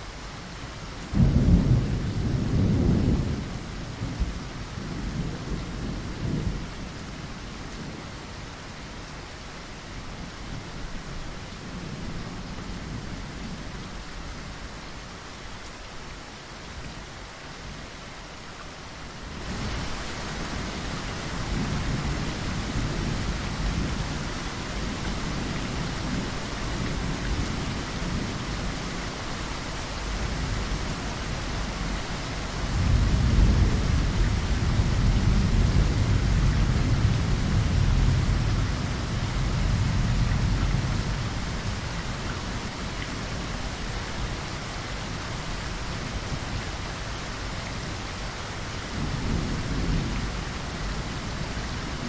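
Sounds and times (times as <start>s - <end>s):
steady rain: 0.0s - 52.0s
thunder rumbling: 1.1s - 6.7s, 19.4s - 29.0s, 30.0s - 43.3s.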